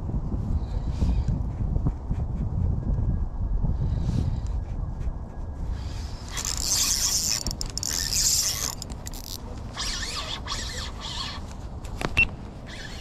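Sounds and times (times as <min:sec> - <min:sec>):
fishing reel whirring and ticking: 0:06.3 - 0:11.4.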